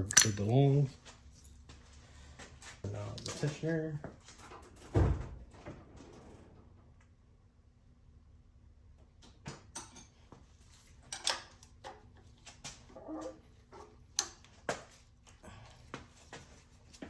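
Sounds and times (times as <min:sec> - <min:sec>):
hand tools clicking on metal: 0:00.0 - 0:00.5.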